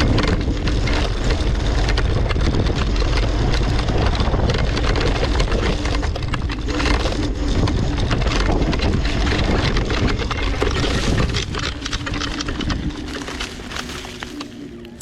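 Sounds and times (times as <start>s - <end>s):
off-road vehicle engine running: 0.0s - 15.0s
rushing and rattling noise: 0.0s - 15.0s.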